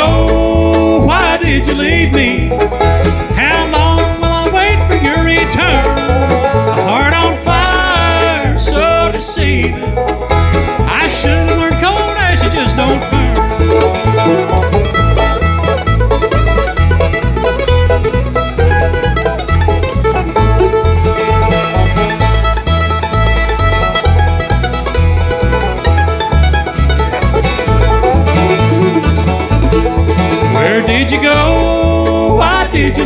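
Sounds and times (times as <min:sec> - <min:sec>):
plucked string instruments: 0:00.0 - 0:33.0
stepping bass line: 0:00.0 - 0:33.0.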